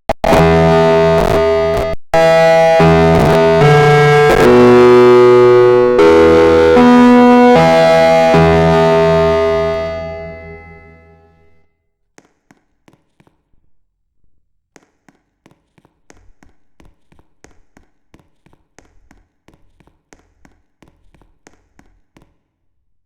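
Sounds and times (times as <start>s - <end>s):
loud tone: 0.1s - 11.4s.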